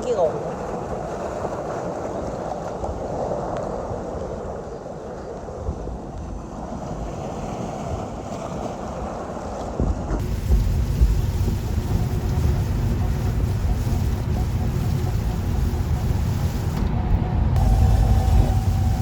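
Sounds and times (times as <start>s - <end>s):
wind on microphone: 0.5s - 19.0s
muffled underwater noise: 10.2s - 19.0s.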